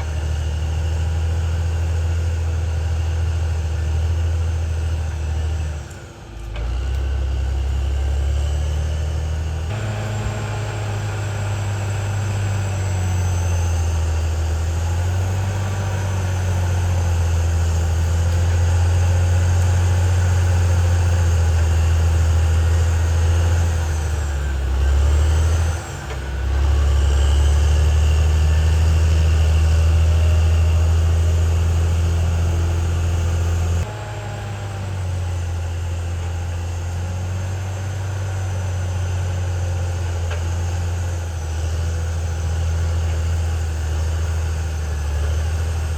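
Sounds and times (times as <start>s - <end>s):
bulldozer diesel engine droning: 0.0s - 45.9s.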